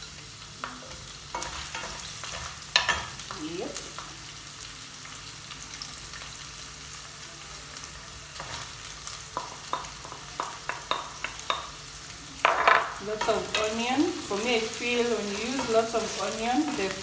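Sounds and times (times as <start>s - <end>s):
onions sizzling in hot oil: 0.0s - 17.0s.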